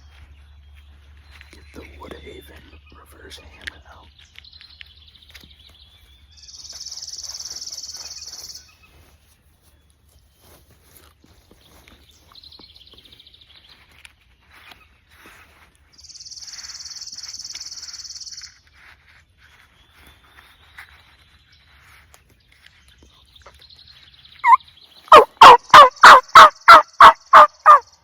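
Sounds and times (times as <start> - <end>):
songbird trilling: 23.8 - 28.0
lower bird trill: 24.1 - 28.0.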